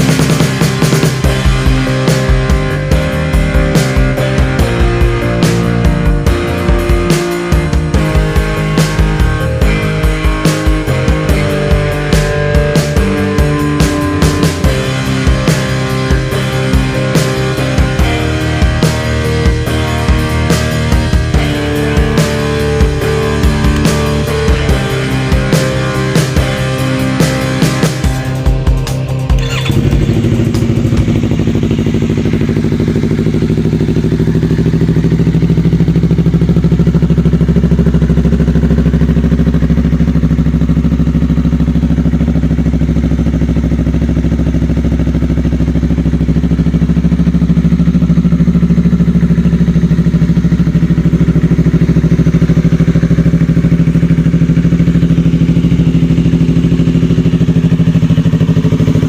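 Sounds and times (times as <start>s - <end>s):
motorcycle engine idling: 0.0s - 59.0s.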